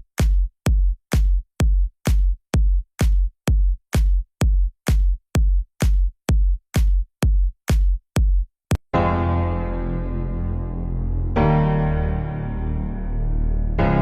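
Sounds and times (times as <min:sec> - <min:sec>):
electronic dance music: 0:00.0 - 0:08.4
drum machine kick: 0:00.0 - 0:08.9.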